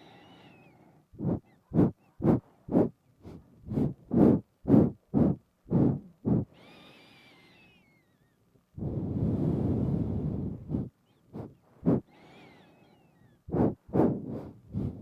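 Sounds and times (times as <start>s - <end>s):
long steady breath out: 0.0s - 1.4s, 3.2s - 8.0s, 8.8s - 15.0s
nasal sniffs and breaths: 1.2s - 6.9s, 8.8s - 12.6s, 13.5s - 15.0s.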